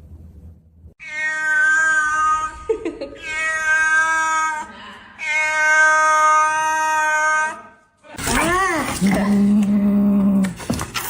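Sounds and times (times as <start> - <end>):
cat yowling: 1.0 - 7.7.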